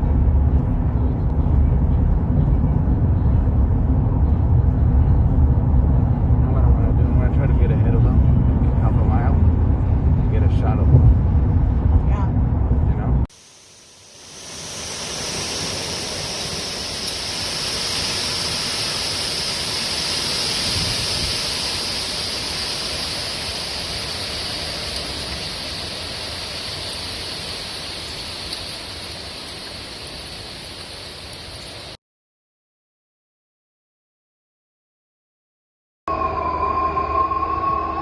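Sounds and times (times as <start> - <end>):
strong wind rushing: 0.0 - 13.3, 14.7 - 24.6
driving rain: 13.0 - 32.0.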